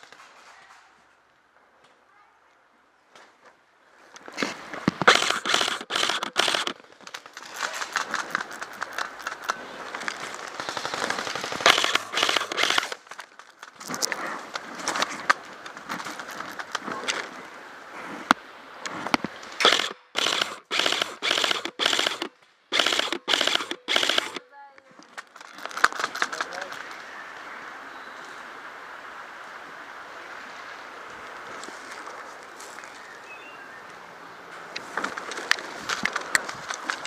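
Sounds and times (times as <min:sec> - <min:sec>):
airsoft guns automatic fire: 0:05.0 - 0:06.8, 0:10.6 - 0:13.0, 0:19.6 - 0:24.4.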